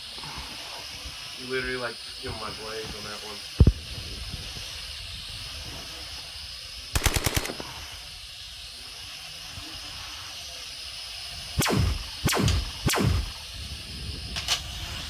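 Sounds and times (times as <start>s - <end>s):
machine-gun fire: 7.0s - 7.9s, 11.6s - 13.4s
blasts dropping in pitch: 11.6s - 13.4s
quadcopter propellers whining: 11.6s - 13.6s.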